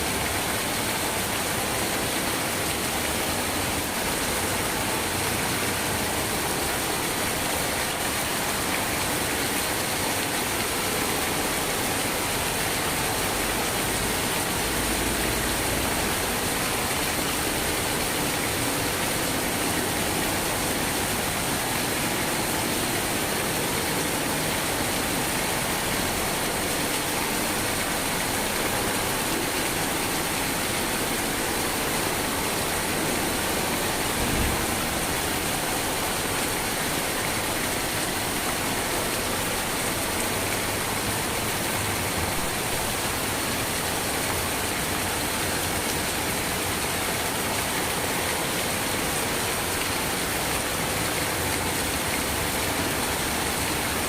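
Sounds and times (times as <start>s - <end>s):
steady rain falling: 0.0s - 54.0s
low thump: 34.2s - 34.6s.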